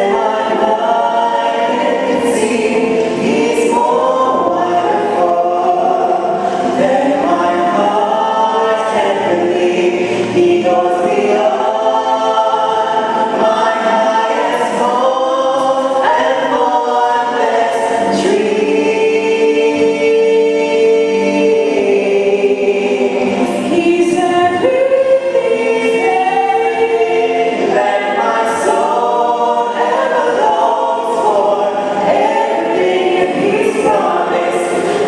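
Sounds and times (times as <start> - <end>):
choir singing a hymn: 0.0 - 35.0.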